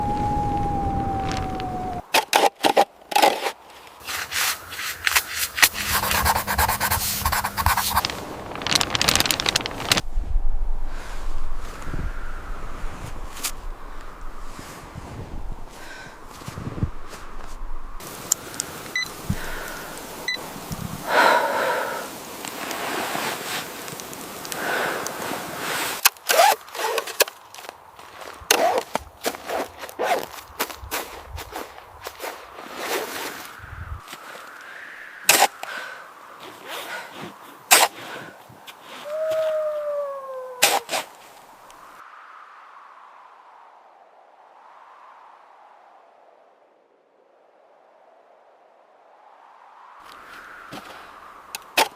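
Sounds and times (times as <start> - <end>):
rubbing and scraping: 2.2 - 10.0
steady rushing hiss: 3.8 - 39.2
sharp crunches with squeaks: 26.1 - 27.4, 28.5 - 30.4.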